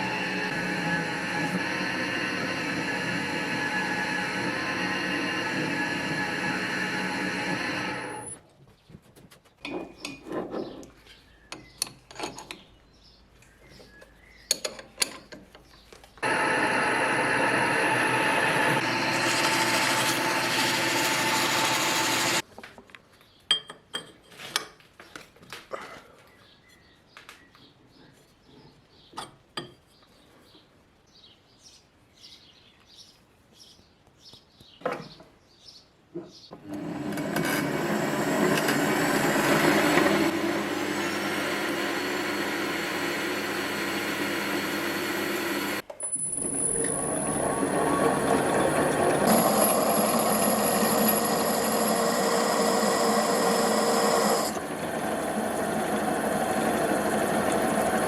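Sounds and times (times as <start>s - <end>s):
power tool running: 0.0s - 8.4s, 16.2s - 22.4s, 36.6s - 58.0s.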